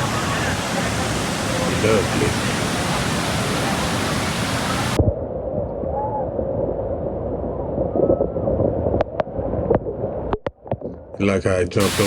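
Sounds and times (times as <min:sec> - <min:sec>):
muffled rushing: 0:00.0 - 0:05.0, 0:11.8 - 0:12.0
roaring waterfall: 0:00.0 - 0:05.0, 0:11.8 - 0:12.0.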